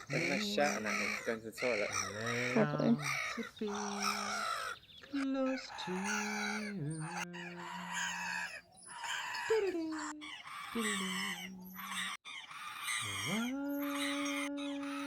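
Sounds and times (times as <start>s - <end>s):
wordless singing voice: 2.5s - 8.6s, 9.3s - 12.1s, 13.0s - 15.0s.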